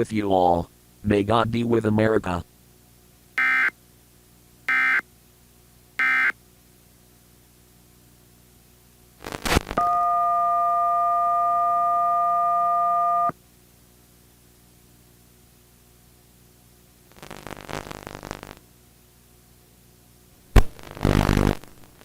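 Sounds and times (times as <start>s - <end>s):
static crackle: 9.2s - 9.8s, 17.0s - 18.7s, 20.4s - 22.0s.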